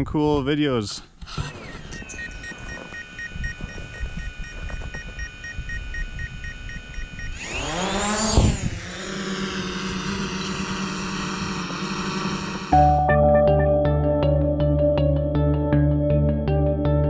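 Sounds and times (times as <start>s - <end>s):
drone propellers buzzing: 1.2s - 13.0s
high pulsing tones: 1.3s - 13.1s.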